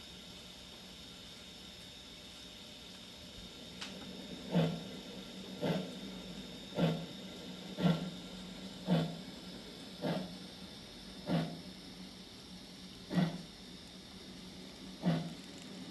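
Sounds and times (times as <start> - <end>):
steam locomotive chuffing: 4.4 - 10.6, 14.9 - 15.5
steam hissing: 5.6 - 10.6, 14.9 - 15.9.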